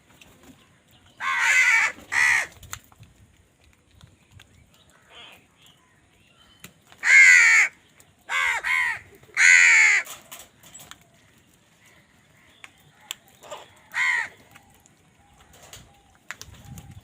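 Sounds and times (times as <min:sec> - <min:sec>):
crow cawing: 0:01.2 - 0:02.5, 0:07.0 - 0:10.2, 0:13.4 - 0:14.6.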